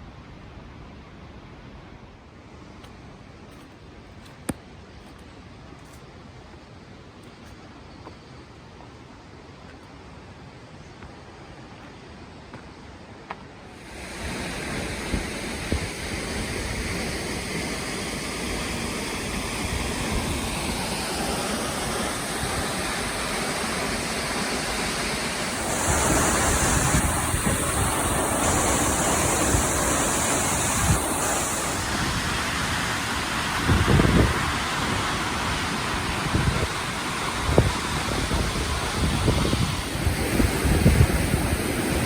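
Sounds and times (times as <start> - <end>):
waterfall roaring: 11.5 - 42.0.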